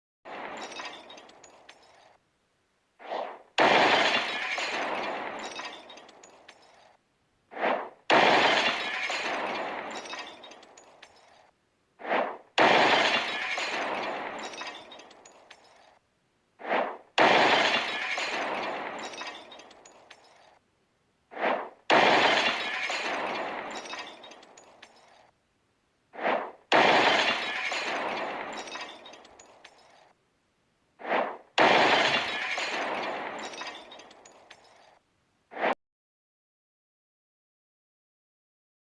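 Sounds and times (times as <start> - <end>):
glass bottle smashing: 0.3 - 2.2, 3.6 - 7.0, 8.1 - 11.5, 12.6 - 16.0, 17.2 - 20.6, 21.9 - 25.3, 26.8 - 30.1, 31.6 - 35.0.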